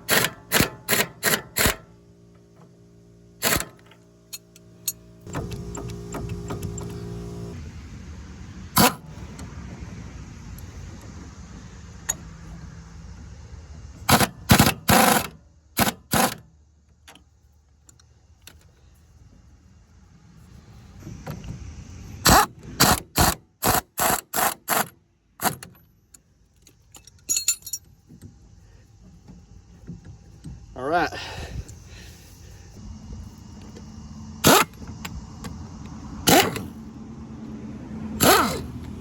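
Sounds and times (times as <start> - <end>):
sharp metallic bursts: 36.2 - 36.8, 38.2 - 38.8.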